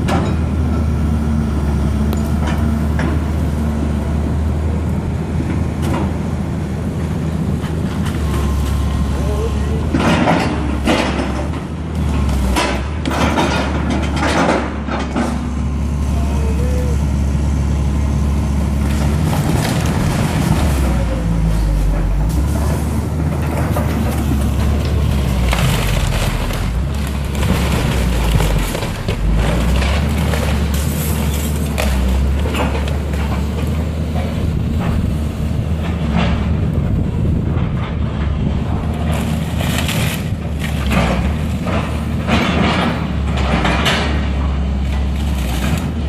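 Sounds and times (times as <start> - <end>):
diesel engine running under load: 0.0 - 46.0
timber and debris cracking and crashing: 18.8 - 22.2, 23.3 - 33.7, 38.6 - 44.2.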